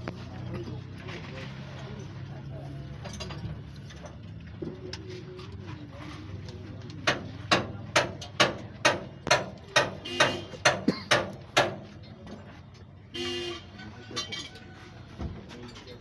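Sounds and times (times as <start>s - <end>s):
hammer blows: 7.1s - 11.8s.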